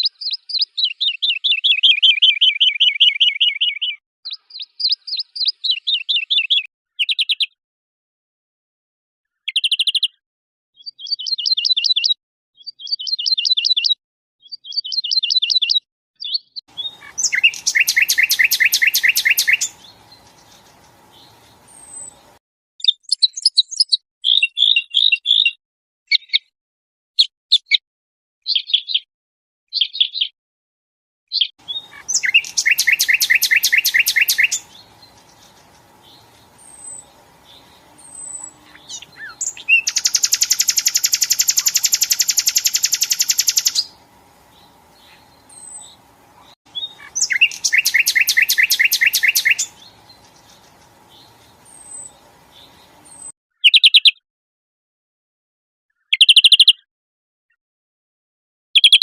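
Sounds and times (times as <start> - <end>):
songbird trilling: 16.7 - 22.3, 31.6 - 54.2
faint steady hum: 16.8 - 22.4, 31.6 - 53.2
faint single bird chirps: 31.4 - 43.9, 58.8 - 59.0.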